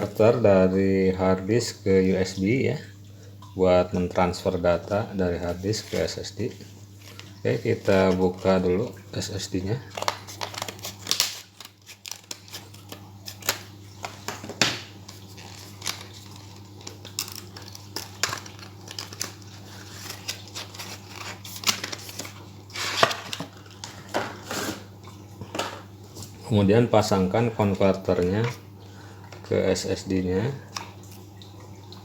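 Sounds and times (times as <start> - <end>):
plastic and cardboard crinkling: 4.9 - 8.6, 9.8 - 24.9.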